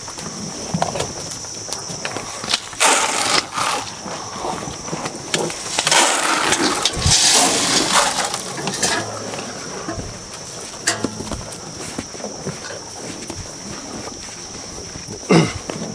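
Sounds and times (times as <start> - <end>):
cattle scraping feed buckets: 0.1 - 15.9
high whine: 5.7 - 12.6.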